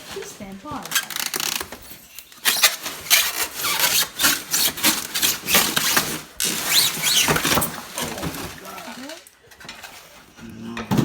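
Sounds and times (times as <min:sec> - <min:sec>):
cardboard scraping and rubbing: 0:02.5 - 0:09.2.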